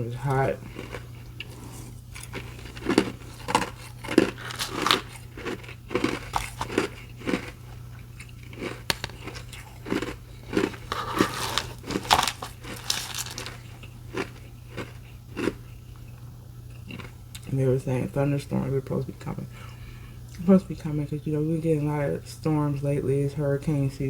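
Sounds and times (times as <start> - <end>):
steady low hum: 0.0 - 24.0
person chewing ice: 0.3 - 16.2, 16.8 - 17.4.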